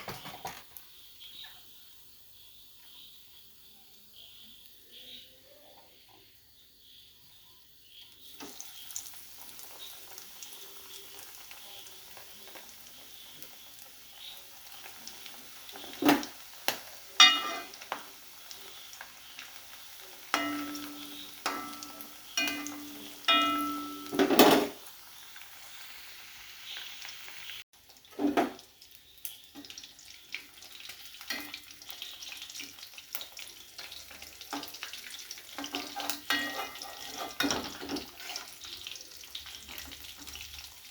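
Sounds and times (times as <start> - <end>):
deep-frying sizzle: 0.0 - 40.9
utensil clanking on frying pan: 15.8 - 18.1, 20.2 - 24.8, 33.8 - 38.6.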